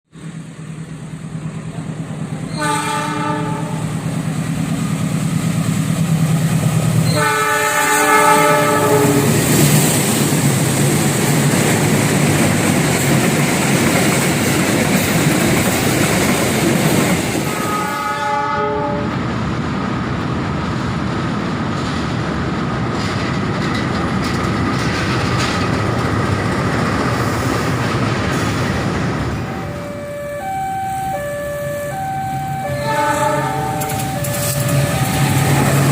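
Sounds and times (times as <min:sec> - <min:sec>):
train wheels rushing on rail: 0:00.1 - 0:35.9
diesel locomotive horn: 0:02.3 - 0:04.1, 0:07.0 - 0:09.6, 0:17.4 - 0:19.2, 0:29.4 - 0:35.9.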